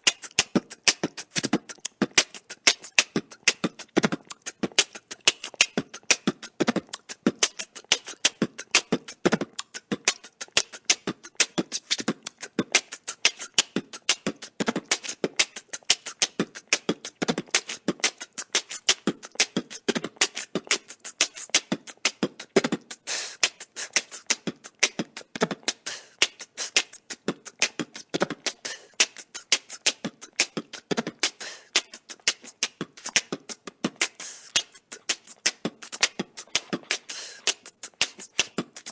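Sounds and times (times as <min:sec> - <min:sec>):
person beatboxing: 0:00.0 - 0:38.9.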